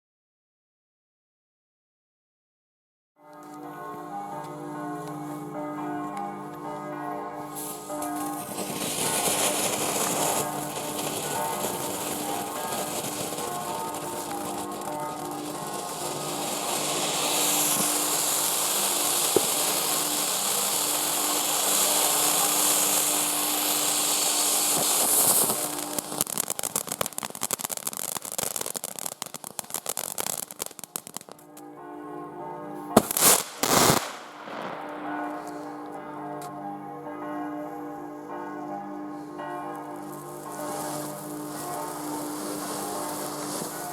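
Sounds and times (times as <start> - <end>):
dense crackling: 7.5 - 31.6, 33.0 - 36.0, 39.7 - 43.9
firework fountain hissing sparks: 7.6 - 31.4, 33.0 - 34.4, 39.7 - 43.9.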